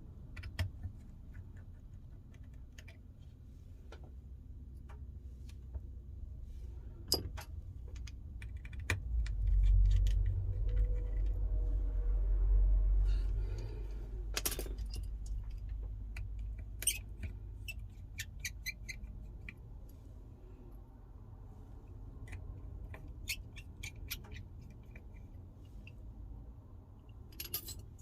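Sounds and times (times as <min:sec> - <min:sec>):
low hum: 0:04.3 - 0:17.9.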